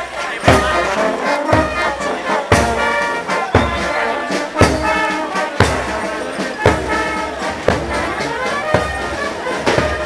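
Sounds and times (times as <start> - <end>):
marching brass band playing: 0.0 - 10.0
bass drum beats: 0.1 - 10.0.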